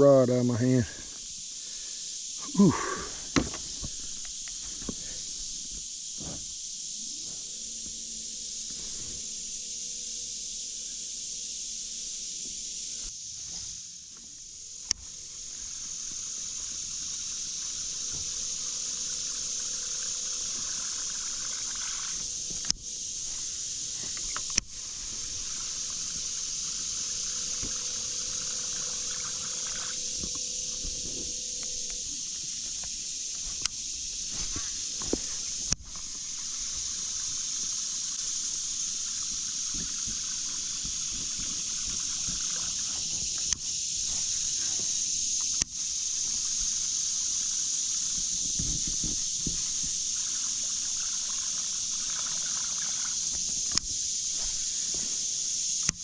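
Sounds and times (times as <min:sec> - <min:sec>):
high-pitched hiss of creek: 0:00.0 - 0:56.0
high-pitched insect chorus: 0:00.0 - 0:56.0
soft water ticks and trickles: 0:14.1 - 0:34.2, 0:35.0 - 0:56.0.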